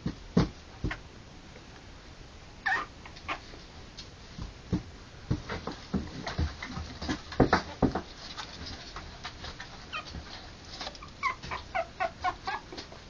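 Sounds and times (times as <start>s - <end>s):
puppy squealing: 2.6s - 3.5s, 11.0s - 12.8s.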